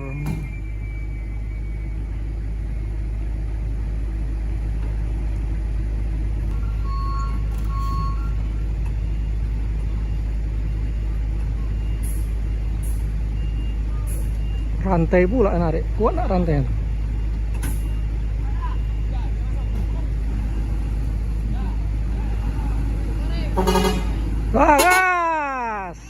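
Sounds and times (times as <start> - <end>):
diesel truck engine running: 0.0 - 26.0
short beeps: 6.6 - 15.6, 16.9 - 20.7.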